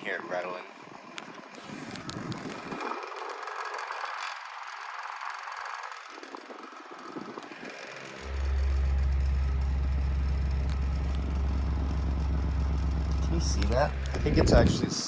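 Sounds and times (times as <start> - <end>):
table fan rushing air: 1.4 - 15.0
loud steady low hum: 6.8 - 15.0.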